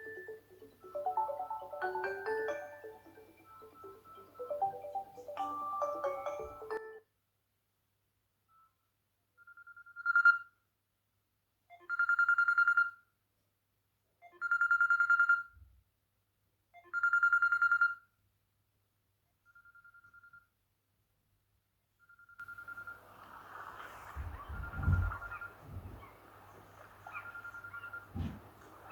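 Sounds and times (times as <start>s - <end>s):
melodic mallet ringtone: 0.0s - 7.0s
telephone bell ringing: 0.0s - 7.0s.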